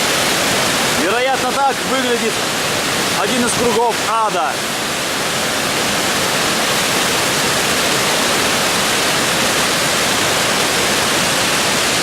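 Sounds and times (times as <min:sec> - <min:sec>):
rush of falling water: 0:00.0 - 0:12.0.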